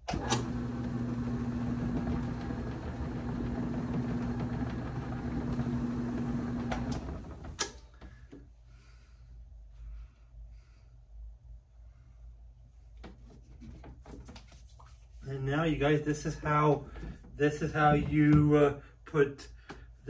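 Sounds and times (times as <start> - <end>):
electric motor humming: 0.1 - 7.6.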